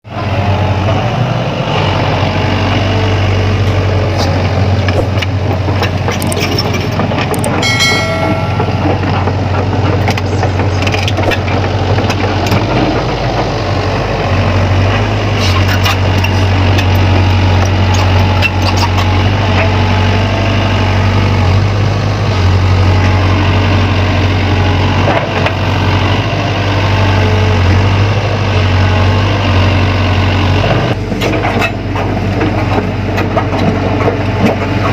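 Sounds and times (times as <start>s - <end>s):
excavator diesel engine droning: 0.1s - 34.9s
knocks and clanks: 4.8s - 13.1s.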